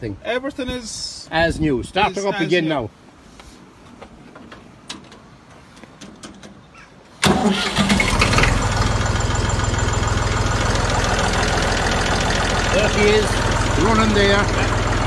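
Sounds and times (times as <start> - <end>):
tractor diesel engine starting: 7.2 - 15.0.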